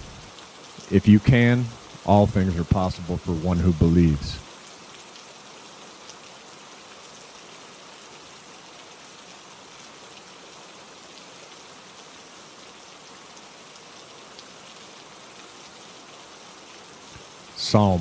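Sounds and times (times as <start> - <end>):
raindrops ticking: 0.0 - 4.5
steady rain hiss: 0.0 - 18.0.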